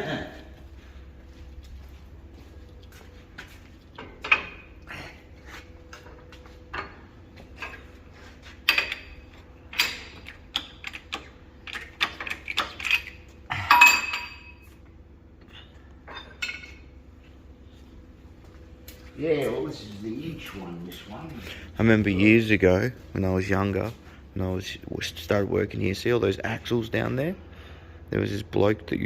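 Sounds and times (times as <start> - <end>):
metallic clinks of steel parts: 12.2 - 14.7.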